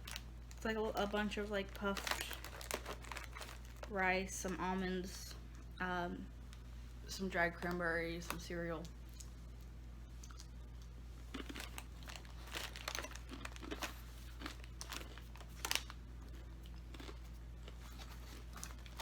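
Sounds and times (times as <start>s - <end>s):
granola crunching: 0.0s - 3.9s, 10.2s - 19.0s.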